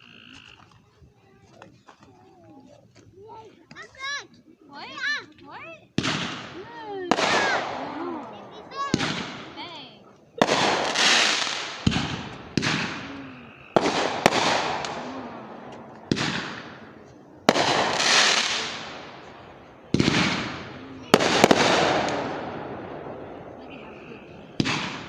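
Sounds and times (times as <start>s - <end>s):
fireworks bangs with crackling hiss: 5.9s - 25.0s.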